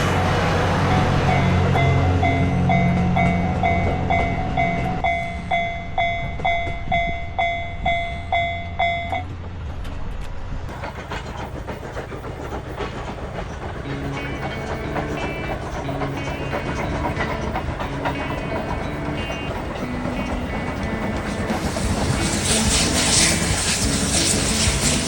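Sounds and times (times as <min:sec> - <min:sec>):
level crossing warning bell: 0:00.0 - 0:09.4, 0:13.7 - 0:23.6
steam train rumbling past: 0:00.0 - 0:25.0.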